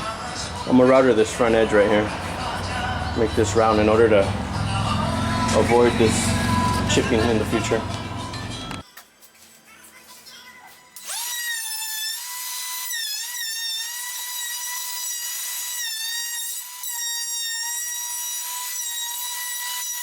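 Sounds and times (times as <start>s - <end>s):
wood router whining: 2.0s - 8.8s, 11.0s - 20.0s.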